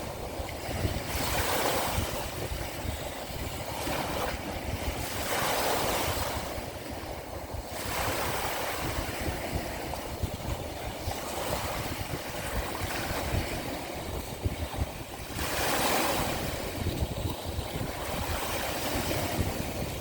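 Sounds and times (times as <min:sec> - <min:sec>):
low rumble of surf: 0:00.0 - 0:20.0
small waves washing onto shore: 0:00.0 - 0:20.0.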